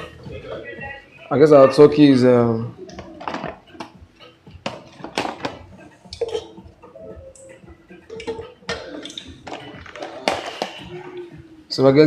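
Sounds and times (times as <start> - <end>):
utensils clinking against pots: 3.2 - 6.6, 8.1 - 11.2.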